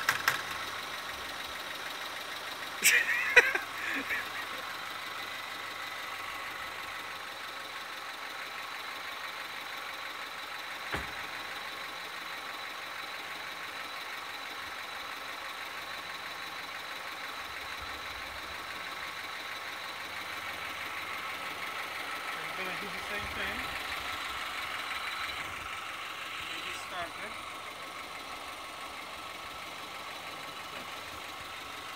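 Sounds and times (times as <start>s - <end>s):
engine idling: 0.0s - 31.9s.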